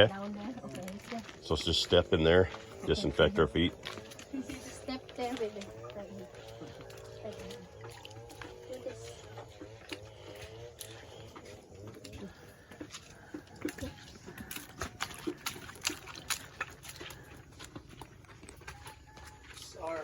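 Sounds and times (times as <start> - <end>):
chickens clucking softly: 5.6 - 15.5.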